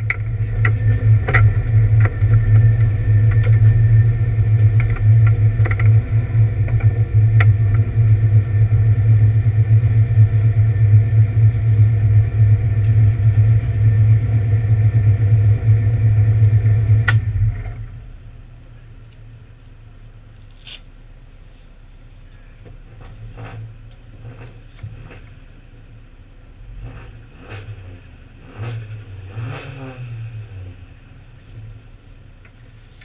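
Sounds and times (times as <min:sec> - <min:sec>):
race car engine misfiring: 0:00.0 - 0:18.4.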